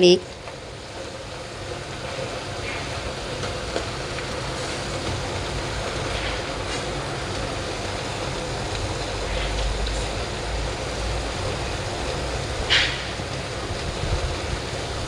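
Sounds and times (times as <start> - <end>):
noodles sizzling in a pan: 0.1 - 15.0.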